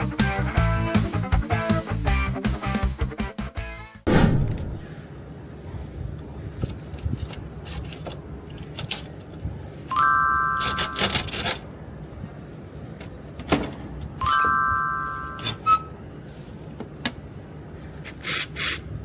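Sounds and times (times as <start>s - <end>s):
bell-like ding: 9.9s - 11.1s, 14.2s - 15.6s.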